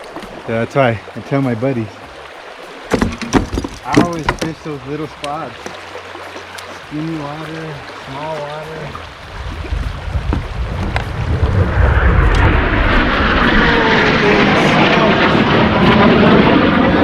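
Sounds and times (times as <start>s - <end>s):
aircraft passing overhead: 9.0s - 17.0s.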